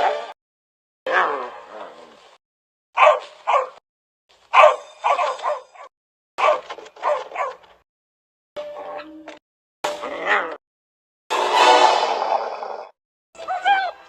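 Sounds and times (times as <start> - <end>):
dog barking: 3.0 - 3.8, 4.5 - 7.7.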